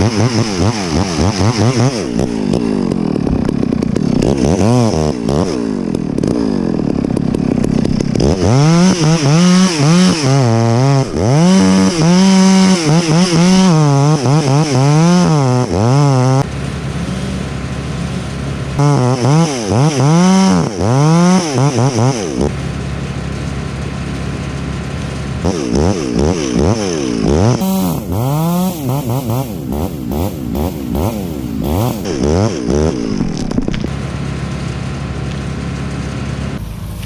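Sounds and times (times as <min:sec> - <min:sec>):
chainsaw revving: 0:00.0 - 0:37.0
engine running steadily: 0:00.0 - 0:37.0.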